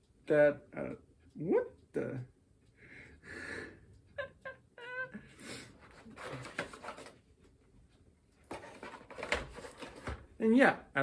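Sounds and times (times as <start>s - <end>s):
packaging rustling: 5.8s - 7.2s, 8.5s - 10.3s.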